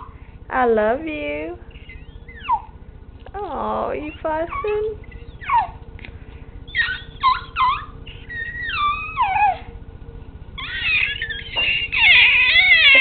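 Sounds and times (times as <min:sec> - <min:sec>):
baby wailing: 0:04.5 - 0:05.8, 0:06.7 - 0:09.7, 0:10.6 - 0:13.0
baby whimpering: 0:04.5 - 0:05.8, 0:06.7 - 0:09.8, 0:10.6 - 0:13.0.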